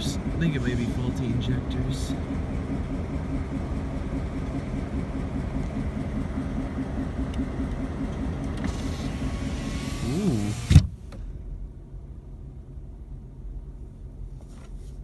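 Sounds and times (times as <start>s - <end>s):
diesel locomotive engine misfiring: 0.0s - 11.1s.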